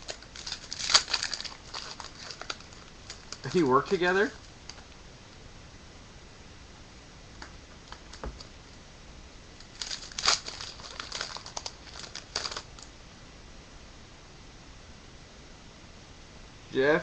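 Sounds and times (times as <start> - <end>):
foil wrapper tearing and crinkling: 0.0 - 4.8, 9.7 - 12.9.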